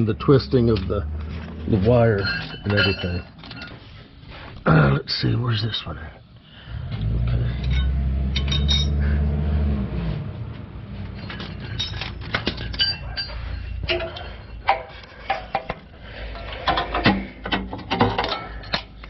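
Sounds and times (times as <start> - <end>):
metal hand tools clinking: 0.5 - 3.8, 7.4 - 9.3, 11.0 - 19.0.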